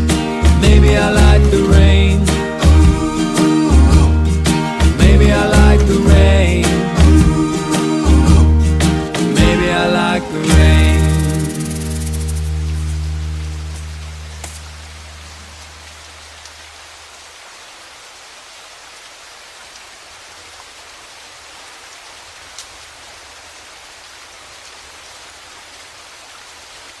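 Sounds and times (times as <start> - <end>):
low music notes: 0.0 - 15.4
steady rain falling: 0.0 - 27.0
water drips: 10.8 - 17.3.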